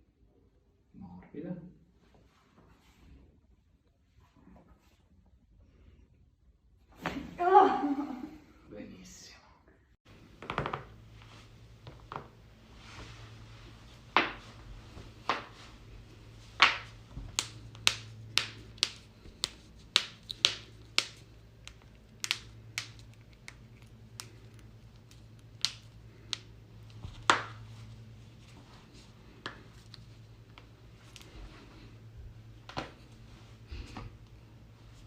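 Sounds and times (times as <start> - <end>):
low steady hum: 0.0 - 35.0.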